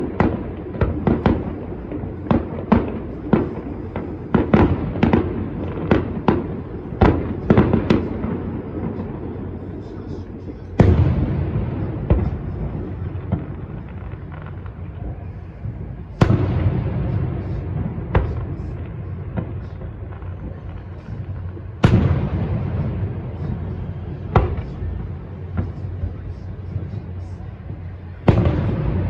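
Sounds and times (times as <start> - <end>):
fireworks bangs: 0.0 - 29.0
fireworks boom rumbling: 0.0 - 29.0.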